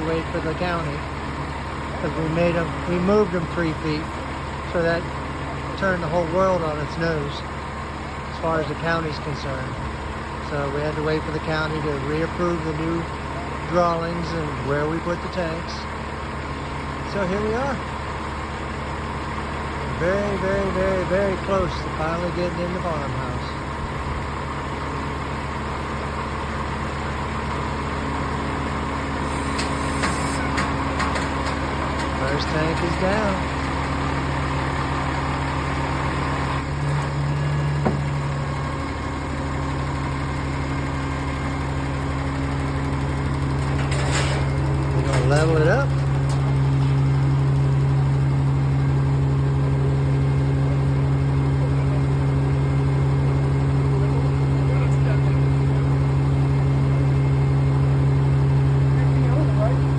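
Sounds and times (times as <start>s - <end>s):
heavy machine engine running: 0.0s - 59.9s.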